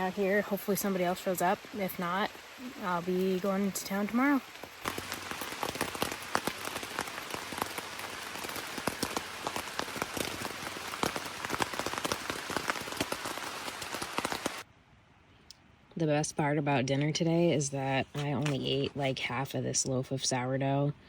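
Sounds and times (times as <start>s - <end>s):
raindrop hits: 0.0s - 14.6s
rain falling steadily: 0.0s - 14.7s.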